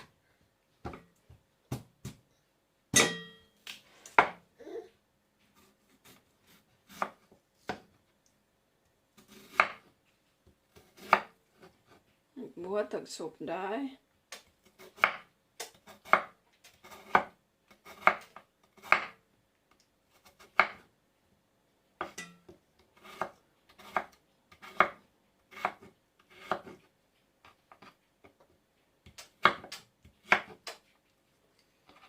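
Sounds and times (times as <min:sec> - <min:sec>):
knife chopping on cutting board: 0:10.8 - 0:11.7, 0:14.8 - 0:19.2, 0:23.0 - 0:26.8.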